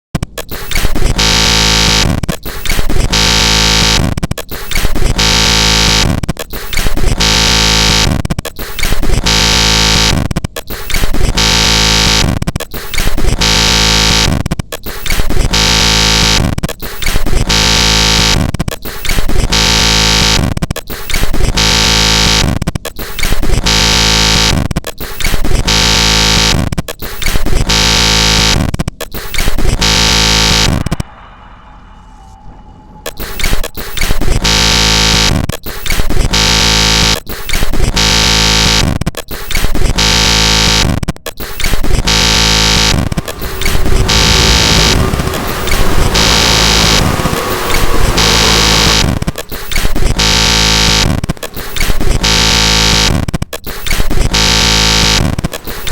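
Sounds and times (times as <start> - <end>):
digital glitch buzzing tones: 0.3 - 31.0, 33.0 - 55.9.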